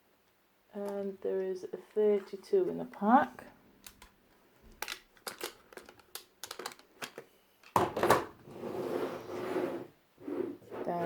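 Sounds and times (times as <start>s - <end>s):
plastic tiles clicking and clacking: 4.8s - 7.8s.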